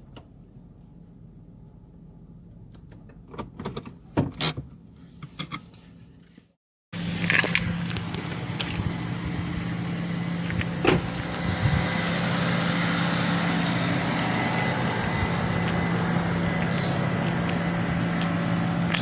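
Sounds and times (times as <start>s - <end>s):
car engine hum: 7.0s - 19.0s.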